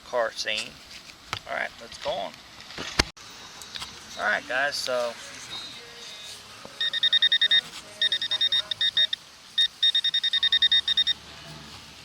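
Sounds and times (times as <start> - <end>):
metal detector beeping: 6.8 - 11.2.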